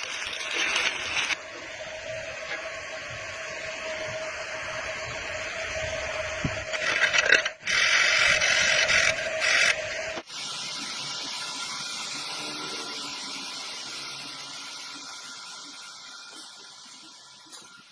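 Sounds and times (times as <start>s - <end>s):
arc crackle: 0.0s - 1.4s
arc welding hiss: 0.0s - 1.4s, 10.2s - 17.9s
constant whining tone: 0.0s - 17.9s.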